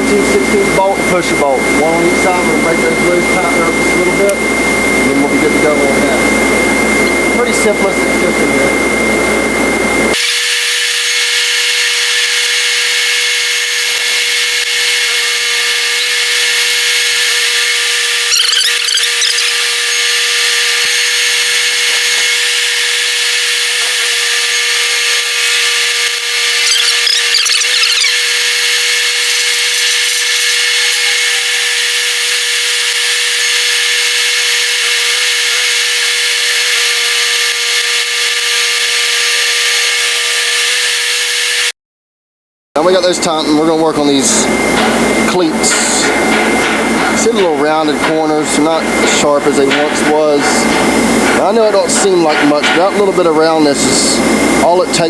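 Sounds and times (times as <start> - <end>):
power tool whining: 10.1 - 41.7.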